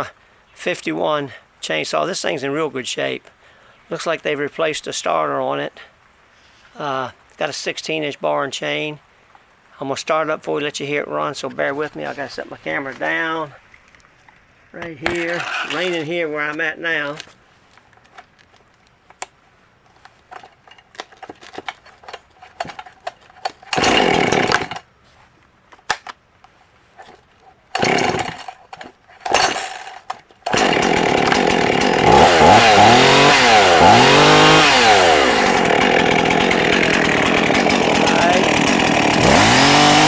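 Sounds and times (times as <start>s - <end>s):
faint clicks and knocks: 15.2s - 23.8s
chainsaw engine sputtering and revving: 23.4s - 24.8s, 27.8s - 40.0s.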